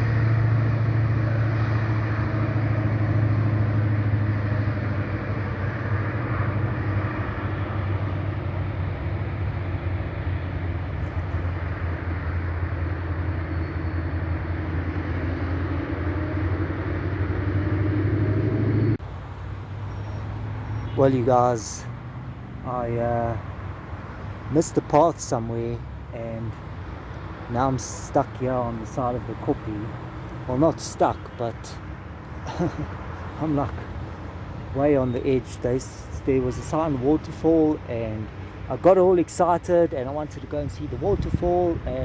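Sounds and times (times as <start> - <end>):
deep engine drone: 0.0 - 19.0
road traffic noise: 0.0 - 42.0.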